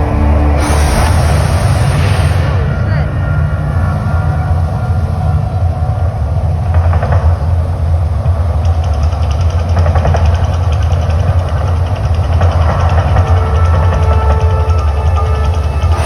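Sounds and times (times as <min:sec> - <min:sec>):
loud steady low rumble: 0:00.0 - 0:16.0
faint rapid ticking: 0:06.6 - 0:16.0.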